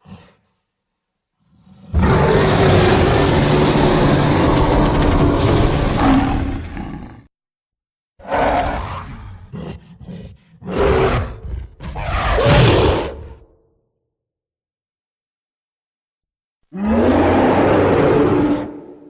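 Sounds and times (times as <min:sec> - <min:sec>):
monster roaring: 0:01.5 - 0:07.3, 0:08.2 - 0:13.5, 0:16.7 - 0:19.0.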